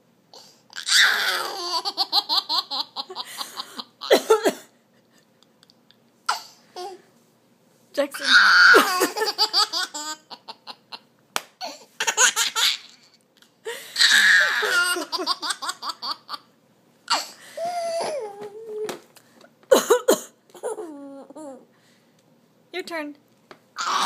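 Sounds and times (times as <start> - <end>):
baby laughing: 0.8 - 4.4, 8.3 - 13.2, 14.0 - 16.5, 20.5 - 21.7
baby drawn-out voiced sound: 8.1 - 8.9.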